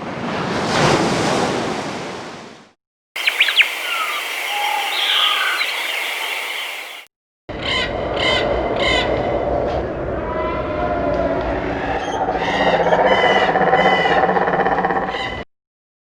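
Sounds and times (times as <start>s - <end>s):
ocean waves: 0.0s - 2.6s, 3.2s - 7.1s
birds chirping: 3.2s - 7.1s
harsh bird calls: 3.2s - 7.1s
low rumble: 7.5s - 13.4s.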